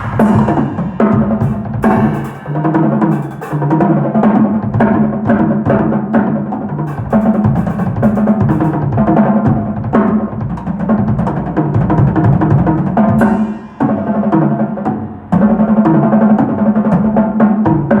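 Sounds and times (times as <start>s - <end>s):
cymbal crash: 0.0s - 4.0s
drum kit groove: 0.0s - 6.0s, 6.8s - 14.1s.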